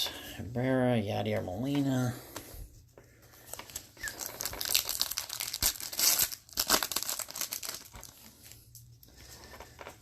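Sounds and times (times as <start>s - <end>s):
foil wrapper crinkling and tearing: 3.4s - 8.8s.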